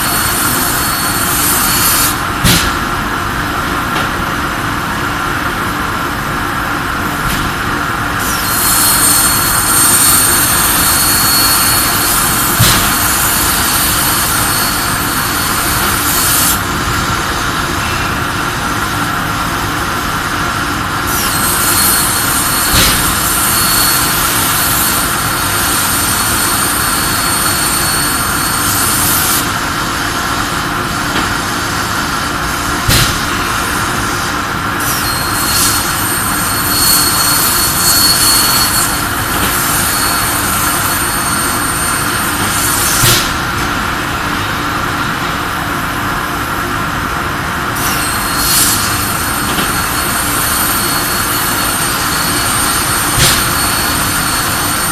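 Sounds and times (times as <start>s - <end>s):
machine hum and rumble: 0.0s - 54.9s
plasma torch arc hissing: 8.2s - 16.7s, 21.1s - 29.6s, 31.3s - 44.0s, 47.8s - 54.9s.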